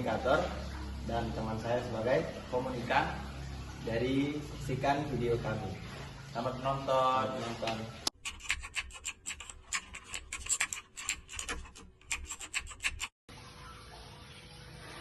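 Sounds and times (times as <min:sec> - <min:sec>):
scratchy rubbing strokes: 0:08.2 - 0:13.1.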